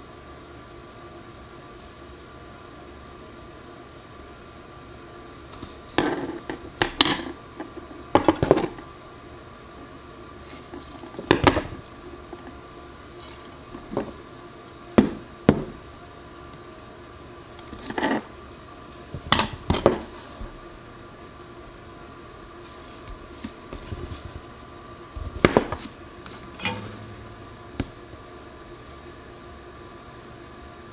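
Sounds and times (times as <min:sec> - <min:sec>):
faint steady hum: 0:00.0 - 0:30.9
small hard parts clinking: 0:10.4 - 0:15.9, 0:17.5 - 0:20.6, 0:22.6 - 0:24.6, 0:25.2 - 0:28.2.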